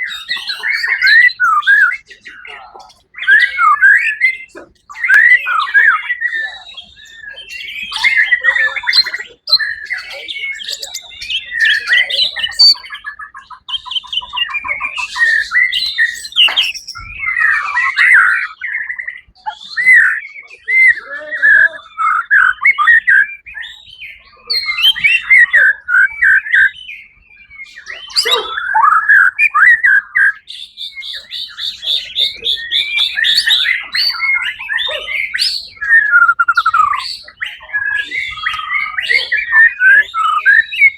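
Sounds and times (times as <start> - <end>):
songbird whistles and trills: 0.0 - 40.9.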